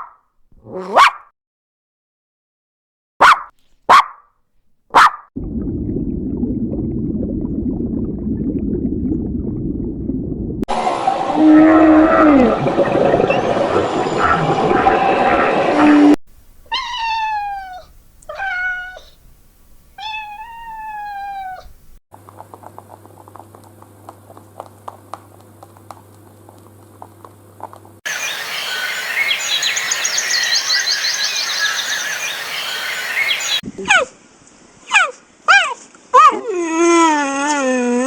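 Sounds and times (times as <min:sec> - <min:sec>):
low hum: 0:05.4 - 0:22.0
cat meowing: 0:16.7 - 0:19.2, 0:20.0 - 0:21.8.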